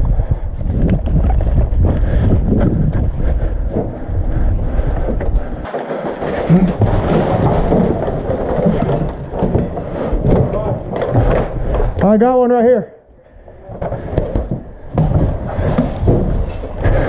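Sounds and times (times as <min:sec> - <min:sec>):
wind buffeting microphone: 0:00.0 - 0:12.0
rustling: 0:00.9 - 0:12.0.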